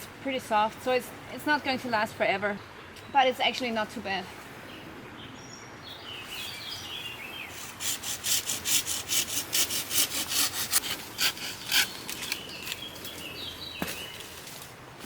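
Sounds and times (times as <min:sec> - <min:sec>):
hand saw cutting branch: 0:07.5 - 0:12.8.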